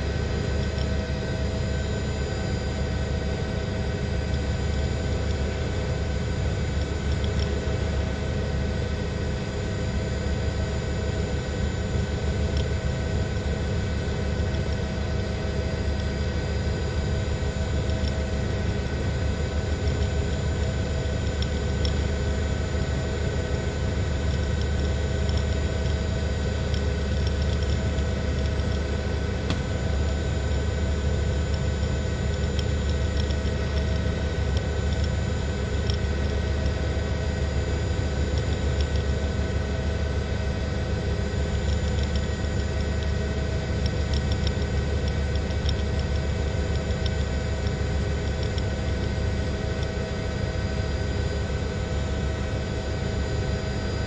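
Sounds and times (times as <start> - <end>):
helicopter rotor and engine: 0.0 - 54.0
steady whining tones: 16.0 - 39.5.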